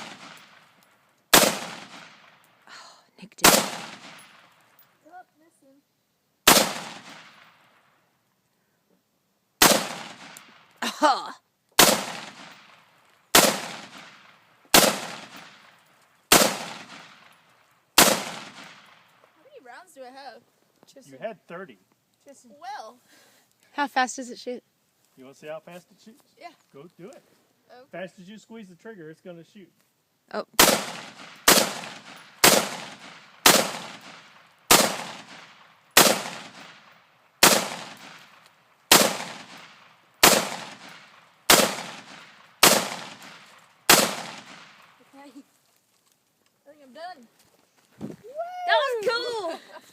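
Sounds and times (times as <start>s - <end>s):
rifle shots with echo: 0.0s - 0.7s, 1.3s - 2.4s, 3.4s - 4.6s, 6.4s - 7.7s, 9.6s - 10.6s, 11.8s - 17.4s, 18.0s - 19.1s, 30.6s - 45.0s.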